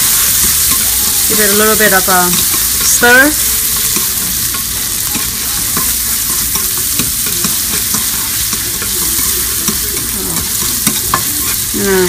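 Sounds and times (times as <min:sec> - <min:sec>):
bacon sizzling in a pan: 0:00.0 - 0:12.0
utensil scraping and tapping pan: 0:00.4 - 0:01.3, 0:03.7 - 0:11.7.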